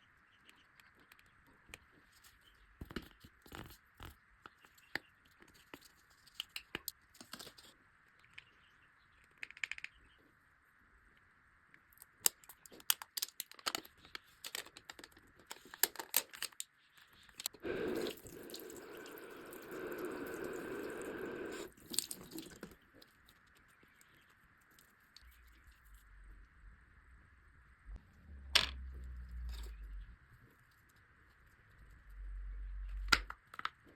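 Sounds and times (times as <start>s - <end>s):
tape crackling and clicking: 11.8s - 25.8s
water pouring: 17.6s - 22.7s.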